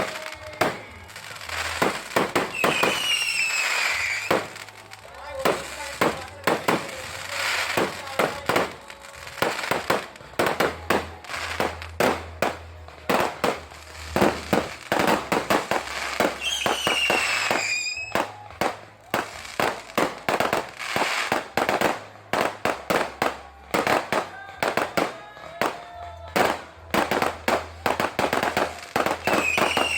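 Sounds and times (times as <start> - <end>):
whistling firework: 0.0 - 4.6, 13.6 - 18.9, 27.8 - 29.9
firework bursts and bangs: 0.0 - 29.9.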